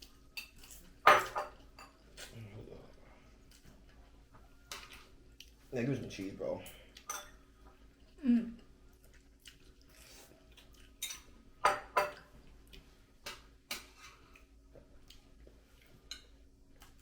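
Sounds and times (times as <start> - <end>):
utensils clinking on bowls: 6.6 - 7.4, 11.0 - 12.3.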